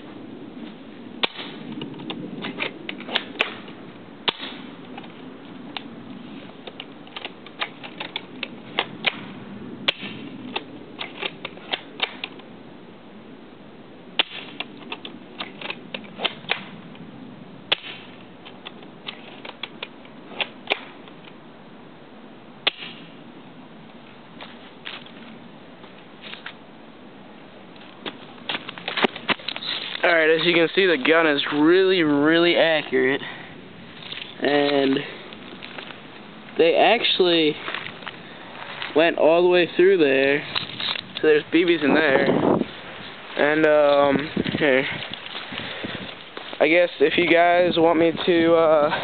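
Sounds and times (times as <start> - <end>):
airsoft rifle shot snap: 17.7 - 18.1, 22.6 - 23.1.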